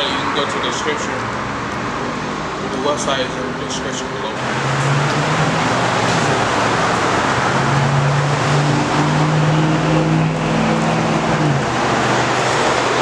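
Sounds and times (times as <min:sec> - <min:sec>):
low engine drone: 0:00.0 - 0:13.0
road and wind noise in car: 0:00.0 - 0:13.0.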